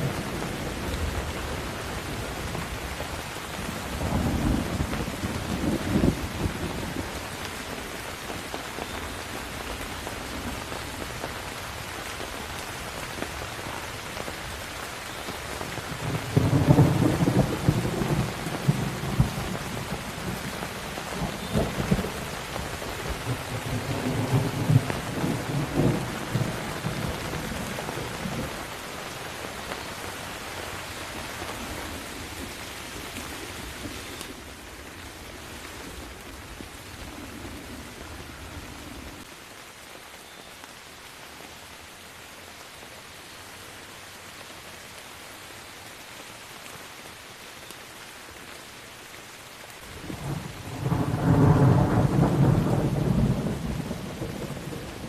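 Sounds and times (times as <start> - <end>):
steady rain: 0.0 - 55.0
thunder rumbling: 3.6 - 7.2, 15.9 - 28.8, 49.9 - 55.0.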